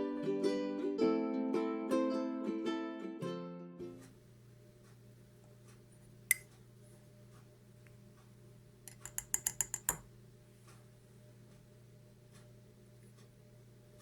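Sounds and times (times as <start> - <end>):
steady low hum: 4.1 - 14.0
small sharp clicks: 6.3 - 6.6, 8.9 - 10.1.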